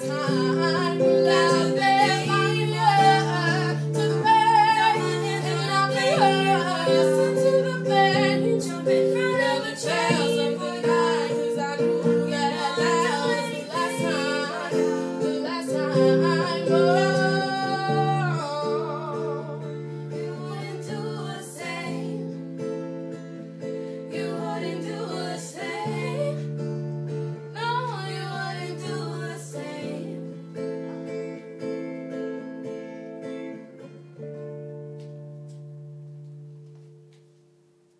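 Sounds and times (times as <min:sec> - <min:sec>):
women singing: 0:00.0 - 0:22.7, 0:23.6 - 0:30.7
strummed acoustic guitar: 0:00.0 - 0:37.2.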